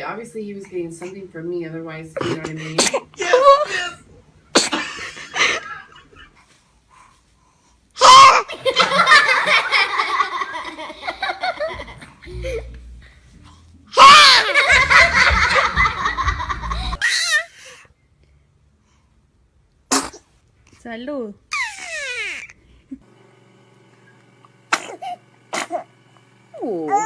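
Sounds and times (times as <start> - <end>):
baby sneezing: 2.2 - 3.3, 4.5 - 4.9, 8.0 - 8.5, 19.9 - 20.3, 24.7 - 25.9
laughter: 4.8 - 6.3, 8.5 - 12.8, 14.2 - 17.0.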